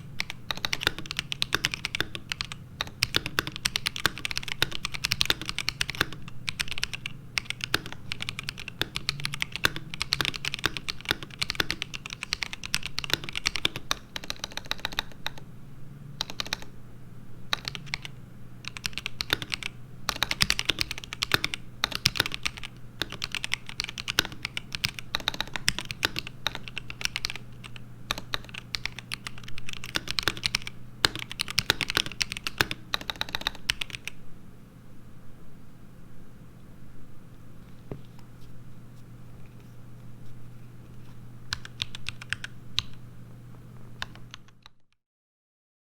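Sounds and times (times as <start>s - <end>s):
mechanical keyboard typing: 0.0s - 15.4s, 16.2s - 16.7s, 17.5s - 34.2s, 41.5s - 43.0s, 43.9s - 44.8s
steady low hum: 0.0s - 44.7s.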